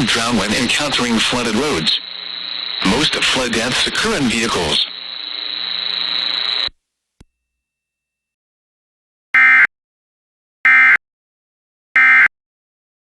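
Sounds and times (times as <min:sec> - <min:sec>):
steady buzz: 0:00.0 - 0:06.8
short digital screeches: 0:00.2 - 0:06.7.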